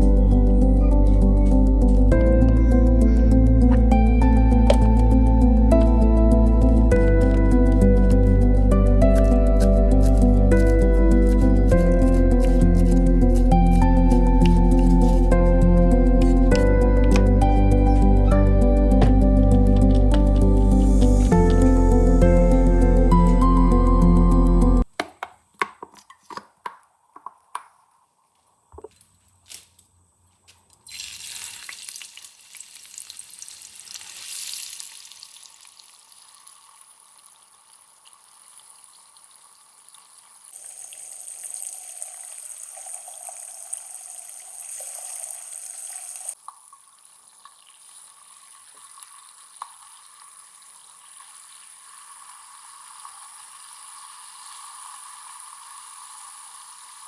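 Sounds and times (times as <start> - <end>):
food sizzling in hot oil: 30.9 - 57.0.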